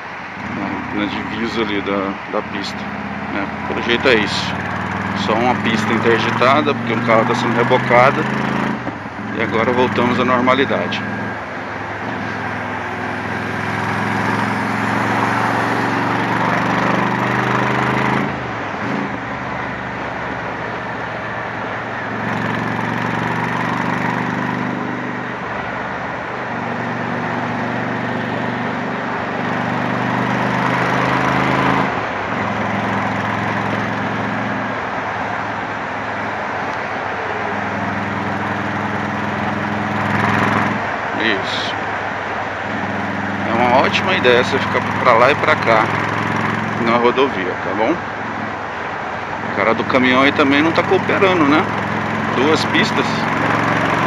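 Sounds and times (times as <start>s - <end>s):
motorcycle engine at road speed: 0.0s - 54.0s.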